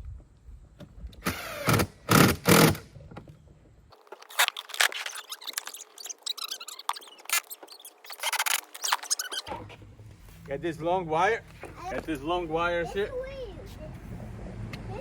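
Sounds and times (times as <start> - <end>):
plastic parts scraping and rattling: 2.6 - 9.8.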